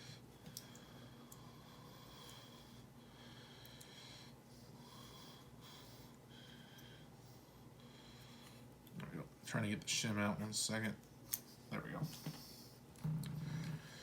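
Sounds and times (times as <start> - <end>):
soft breathing near microphone: 0.0 - 8.8, 11.4 - 14.0
faint steady hum: 0.0 - 14.0.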